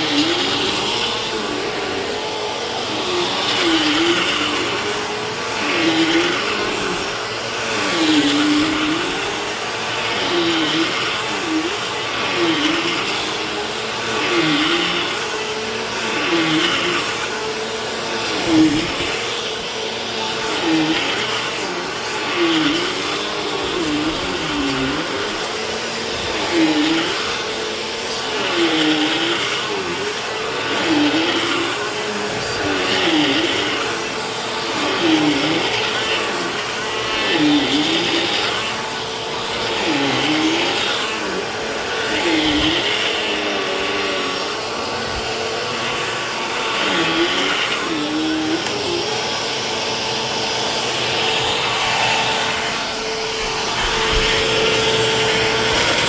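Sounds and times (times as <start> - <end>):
vacuum cleaner running: 0.0 - 56.0.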